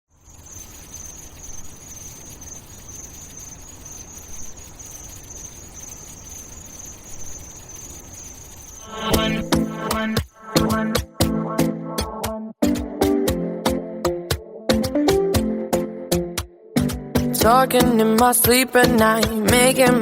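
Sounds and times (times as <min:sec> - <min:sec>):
insect chirring: 0:00.1 - 0:11.2
low background hiss: 0:00.2 - 0:09.9
pop music drum beat: 0:08.9 - 0:20.0.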